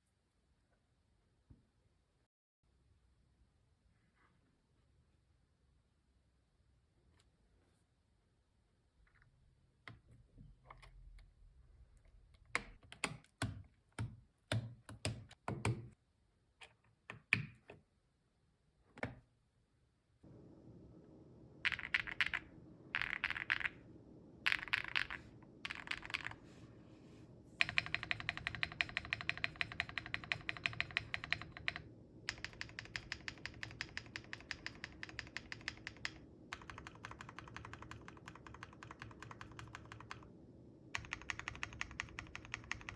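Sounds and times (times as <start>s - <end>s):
faint steady hum: 0.0s - 42.9s
mechanical keyboard typing: 21.6s - 23.8s, 24.4s - 26.4s, 27.6s - 40.3s, 40.9s - 42.9s.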